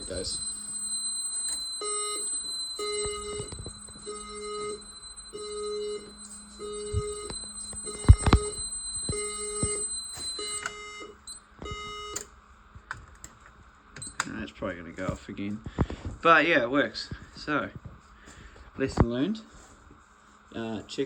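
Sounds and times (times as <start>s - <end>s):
steady high-pitched alarm tone: 0.0s - 12.2s
fire alarm beeping: 0.0s - 12.3s, 14.0s - 14.3s.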